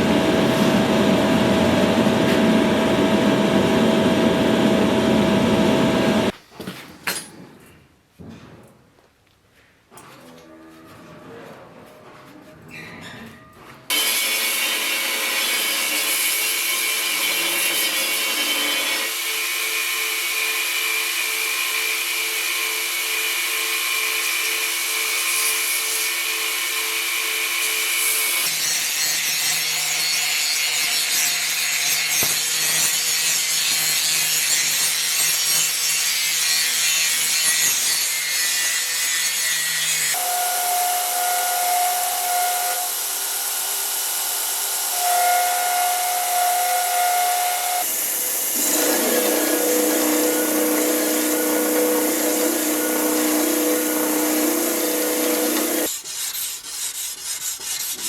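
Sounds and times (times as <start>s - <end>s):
tool grinding steel blade: 13.9s - 58.0s.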